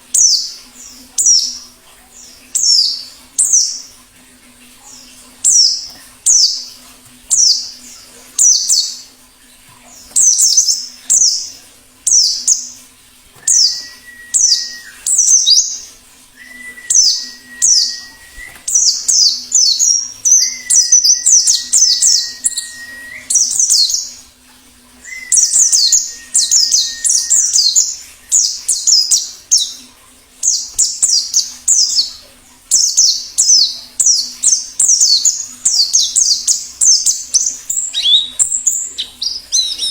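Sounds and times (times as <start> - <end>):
long level whistles: 13.4 - 15.5, 16.4 - 18.7, 20.3 - 23.5, 25.0 - 28.5
bird chirps: 13.4 - 24.2, 25.0 - 29.8, 30.4 - 39.9.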